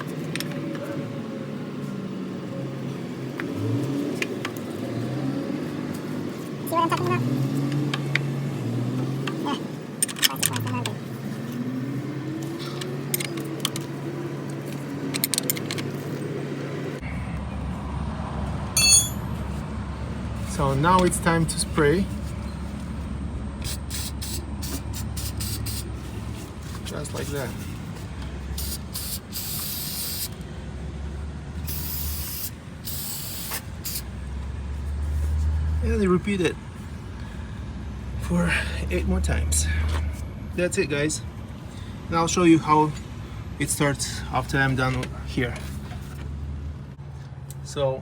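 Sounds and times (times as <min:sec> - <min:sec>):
vehicle engine humming: 0:00.0 - 0:48.0
metal clicks and clinks: 0:12.8 - 0:13.8, 0:18.8 - 0:19.3
aerosol can spraying: 0:23.7 - 0:25.9, 0:28.6 - 0:30.4, 0:31.7 - 0:34.1.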